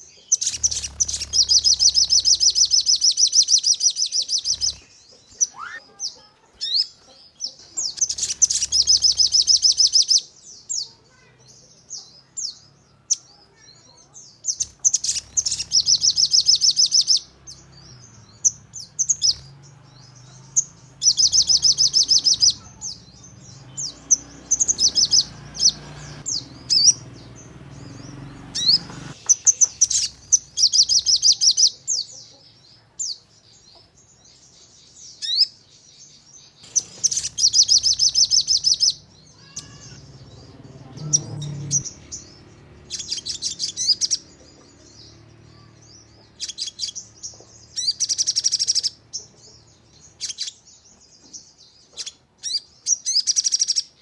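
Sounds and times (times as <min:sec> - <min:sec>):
bird sharp chirps: 0:00.0 - 0:54.0
bird high-pitched trills: 0:00.2 - 0:11.3, 0:12.3 - 0:31.8, 0:36.6 - 0:47.1.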